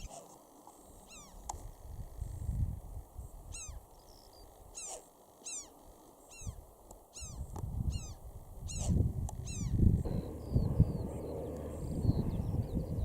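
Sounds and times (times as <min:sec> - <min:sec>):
wind rumbling on microphone: 0:01.4 - 0:03.8, 0:06.4 - 0:13.0
bird calling: 0:07.2 - 0:13.0.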